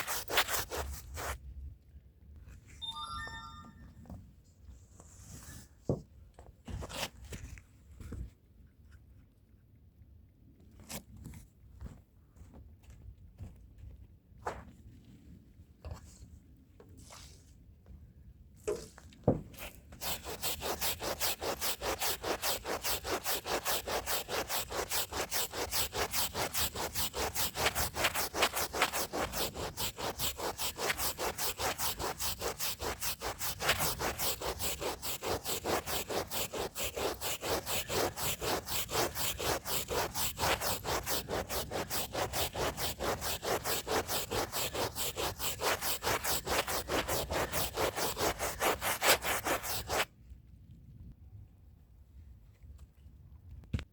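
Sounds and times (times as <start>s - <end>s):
brush scrubbing rug: 0.0s - 1.4s, 19.6s - 50.1s.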